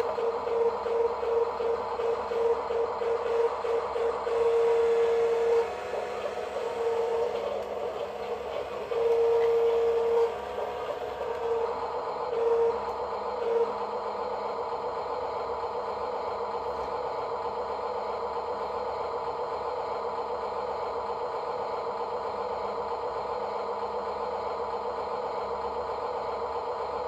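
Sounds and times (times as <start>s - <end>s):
small electric motor whining: 0.0s - 11.8s
rattling hum: 0.0s - 13.8s.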